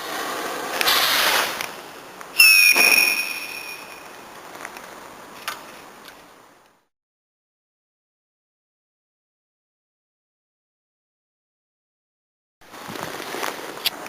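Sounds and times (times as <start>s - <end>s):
firework hissing: 0.0s - 4.6s
shrill firework whistle: 2.4s - 4.1s.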